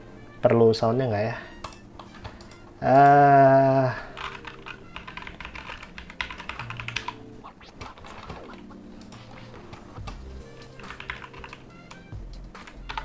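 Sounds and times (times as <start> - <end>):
typing on mechanical keyboard: 4.1 - 7.2, 10.8 - 12.0, 12.6 - 13.0.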